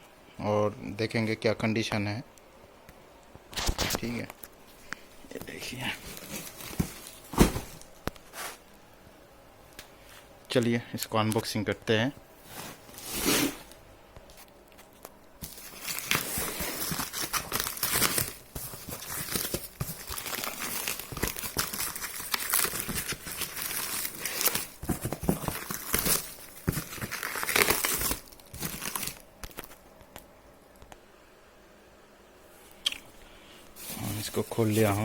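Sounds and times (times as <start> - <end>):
packaging tearing and crinkling: 15.4 - 29.8.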